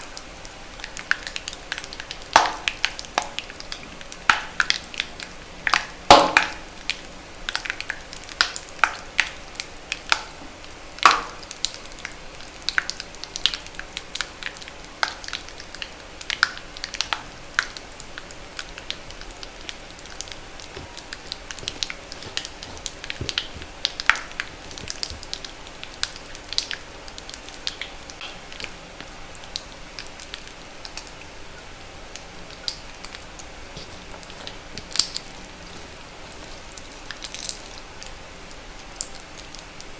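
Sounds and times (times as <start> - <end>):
chalk crackling and popping: 19.6 - 26.8, 32.6 - 37.8.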